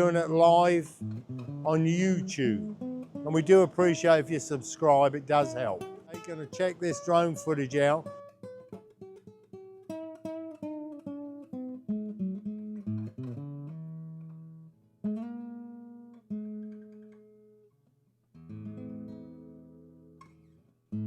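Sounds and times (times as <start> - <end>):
acoustic guitar picking notes: 0.0 - 21.0.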